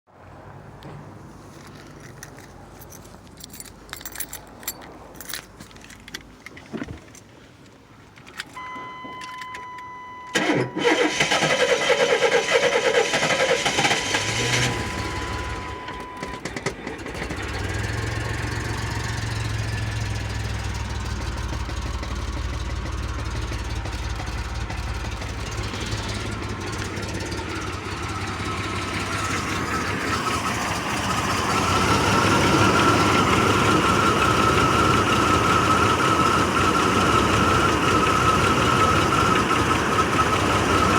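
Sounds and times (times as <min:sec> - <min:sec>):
starter cranking: 0:10.3 - 0:15.3
car engine idling roughly: 0:17.2 - 0:40.9.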